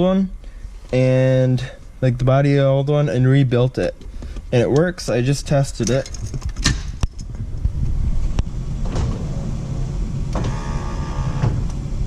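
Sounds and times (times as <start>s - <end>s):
high whine: 7.2s - 12.0s
power window motor humming: 8.8s - 12.0s.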